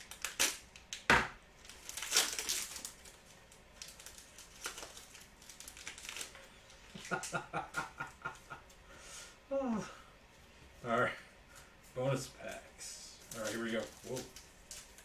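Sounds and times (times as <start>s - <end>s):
card pack wrappers crinkling: 0.0s - 8.5s, 13.2s - 15.0s.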